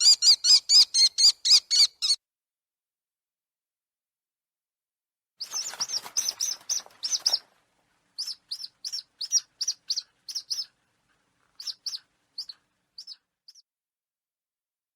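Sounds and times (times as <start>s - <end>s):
bird of prey calling: 0.0s - 2.2s, 5.4s - 7.5s, 8.2s - 10.8s, 11.4s - 13.6s.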